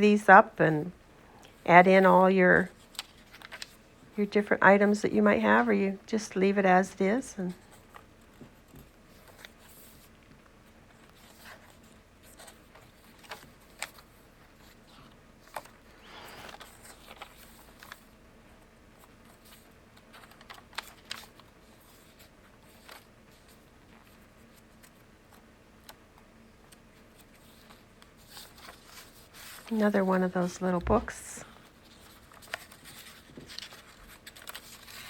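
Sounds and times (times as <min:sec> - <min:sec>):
paper pages rustling: 0:02.8 - 0:03.8, 0:07.6 - 0:18.2, 0:19.0 - 0:26.0, 0:26.7 - 0:35.0.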